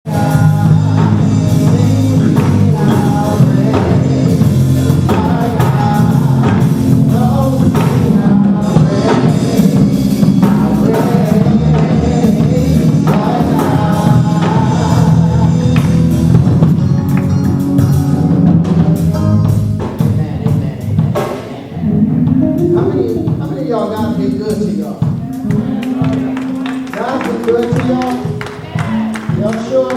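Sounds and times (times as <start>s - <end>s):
gospel band with drum kit: 0.0s - 29.9s
singing: 0.1s - 16.2s, 25.2s - 29.9s.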